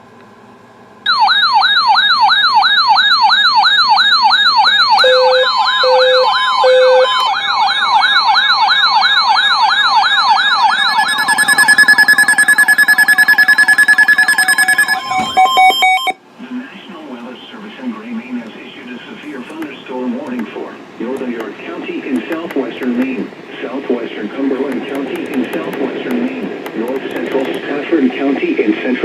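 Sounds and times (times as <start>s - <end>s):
weather alert siren sweeps: 1.1s - 16.2s
rapid high-pitched beeping: 10.7s - 16.2s, 24.8s - 27.6s
short low beeps: 10.8s - 16.2s.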